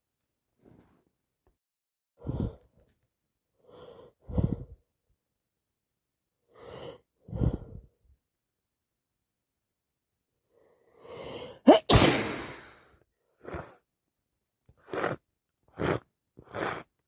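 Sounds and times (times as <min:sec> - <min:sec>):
gasping in-breath: 0:02.2 - 0:02.9, 0:03.6 - 0:04.8, 0:06.5 - 0:08.0, 0:10.6 - 0:11.6
woman sneezing: 0:11.7 - 0:12.7.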